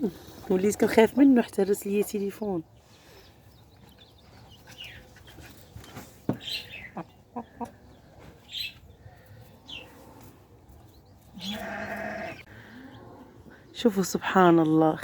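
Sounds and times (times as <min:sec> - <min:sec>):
chicks peeping: 0:02.4 - 0:11.5
hen clucking: 0:03.8 - 0:08.9.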